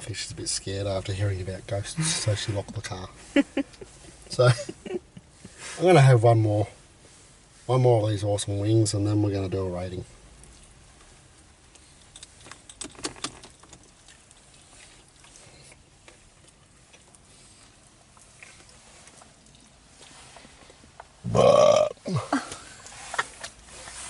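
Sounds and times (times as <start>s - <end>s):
man chewing: 11.4s - 21.9s
loud burp: 21.2s - 22.4s.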